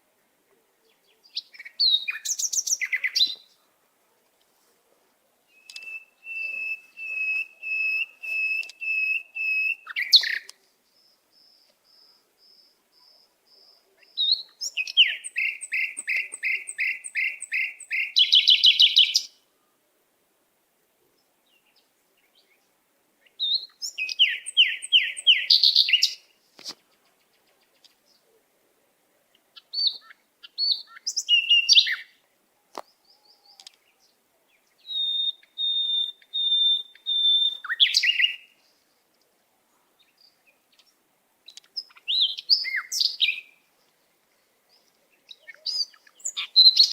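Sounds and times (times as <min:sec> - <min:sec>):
bird whistling and trilling: 0:01.6 - 0:03.4, 0:05.6 - 0:10.4, 0:14.2 - 0:19.3, 0:23.4 - 0:26.2, 0:29.7 - 0:32.1, 0:34.8 - 0:38.5, 0:45.4 - 0:46.9.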